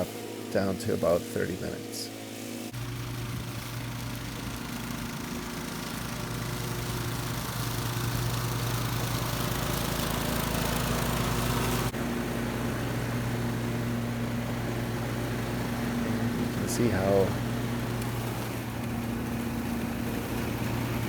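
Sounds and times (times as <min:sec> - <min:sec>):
lawn mower engine hum: 0:00.0 - 0:21.0
mower blades rushing: 0:00.0 - 0:21.0.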